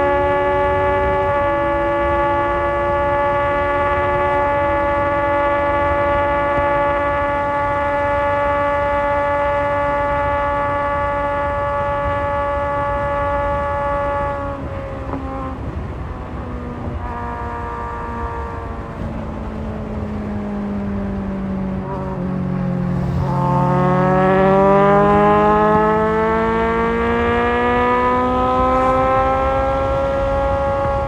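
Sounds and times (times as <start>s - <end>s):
motorcycle engine at high revs: 0.0s - 31.0s
wind rush: 12.0s - 31.0s.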